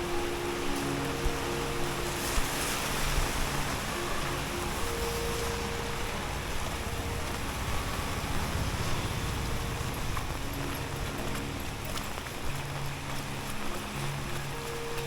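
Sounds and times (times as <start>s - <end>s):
traffic tyres on wet pavement: 0.0s - 15.0s.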